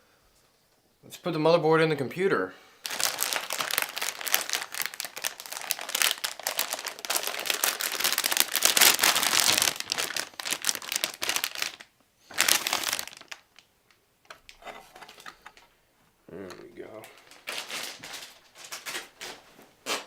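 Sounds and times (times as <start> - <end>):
plastic packaging crinkling: 2.8 - 13.7, 17.0 - 20.0.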